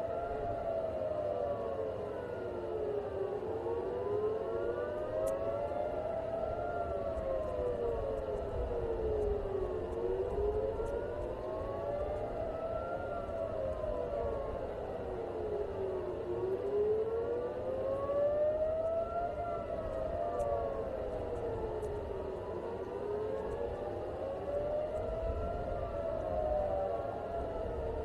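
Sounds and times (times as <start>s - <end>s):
air-raid sirens wailing: 0.0s - 28.0s.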